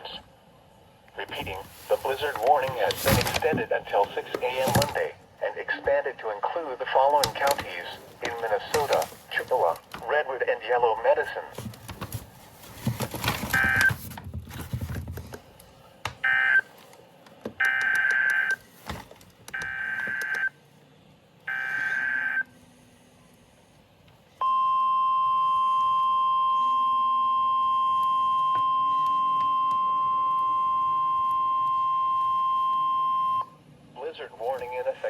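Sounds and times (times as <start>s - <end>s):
steady warning alarm tone: 17.6s - 18.6s, 19.5s - 20.5s, 24.4s - 33.6s.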